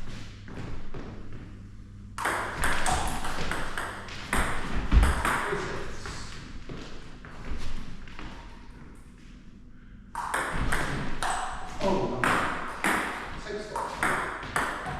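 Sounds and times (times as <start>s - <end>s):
table tennis ball rally: 2.2s - 5.8s, 10.2s - 14.9s.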